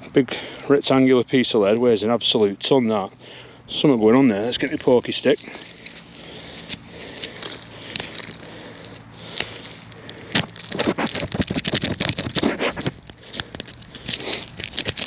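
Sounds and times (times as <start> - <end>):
stick scraping packed soil: 3.8 - 15.0.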